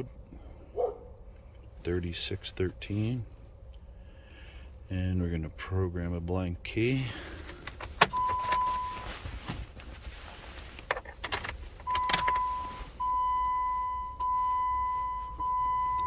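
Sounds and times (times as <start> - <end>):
keys and ignition clicking: 7.3 - 16.0
long electronic beeps: 11.9 - 16.0.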